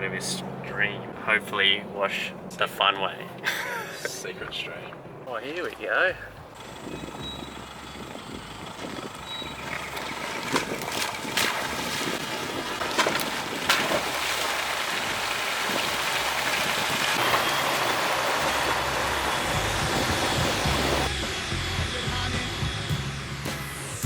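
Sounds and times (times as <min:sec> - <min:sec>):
water splashing against vehicle: 0:03.3 - 0:21.1.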